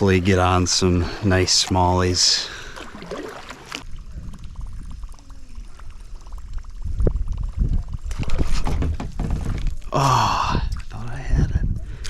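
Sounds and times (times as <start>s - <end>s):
water sloshing and splashing: 0.0s - 6.6s.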